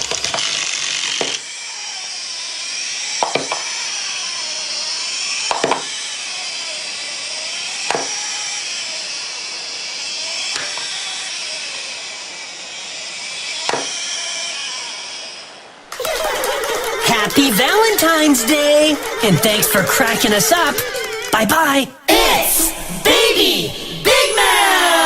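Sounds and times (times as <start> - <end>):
steady hissing: 0.0 - 21.5
sharp pops: 3.1 - 4.0, 5.4 - 6.0, 7.8 - 8.3, 13.6 - 14.0.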